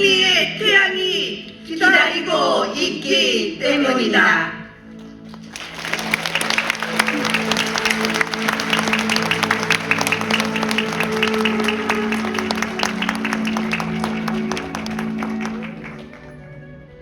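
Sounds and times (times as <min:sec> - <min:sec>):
music with long held chords: 0:05.0 - 0:17.0
people clapping: 0:05.2 - 0:16.4.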